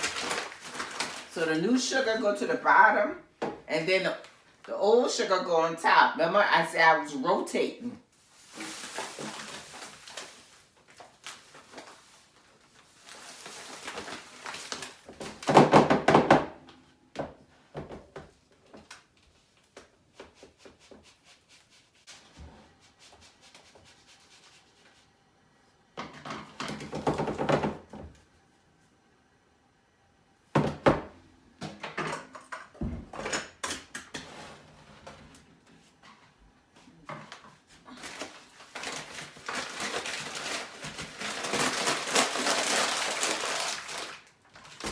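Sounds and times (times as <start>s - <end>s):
containers knocking and clunking: 26.0s - 28.2s.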